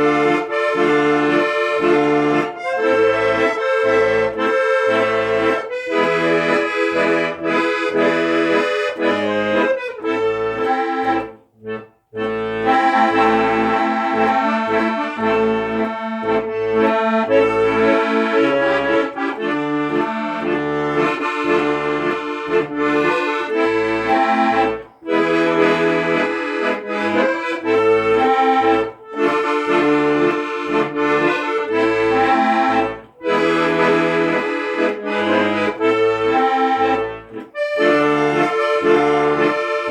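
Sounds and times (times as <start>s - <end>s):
accordion folk tune: 0.0s - 39.9s.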